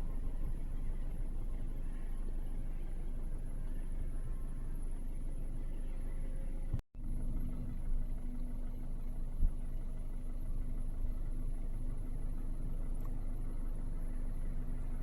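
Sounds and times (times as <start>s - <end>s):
vehicle engine drone: 0.0s - 15.0s.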